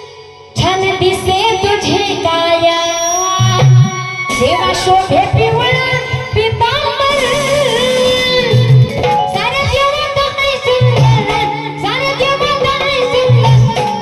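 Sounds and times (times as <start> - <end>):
hand drum beats: 3.5 - 14.0.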